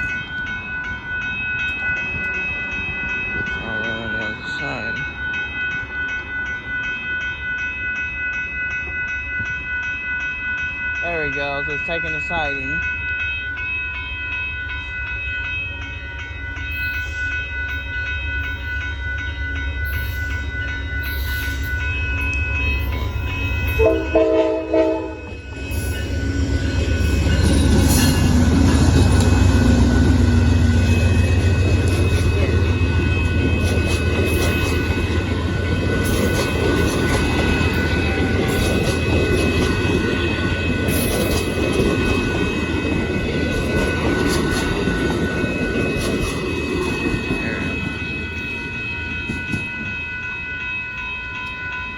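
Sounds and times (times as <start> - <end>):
crossing bell ringing tones: 0.0 - 51.9
train wheels rumbling: 0.0 - 51.9
locomotive chord horn blasts: 23.7 - 25.4.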